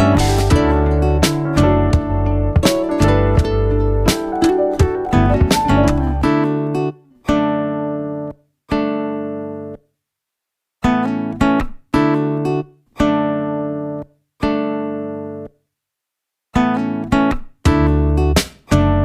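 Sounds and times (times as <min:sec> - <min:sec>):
guitar chords ringing: 0:00.0 - 0:09.7.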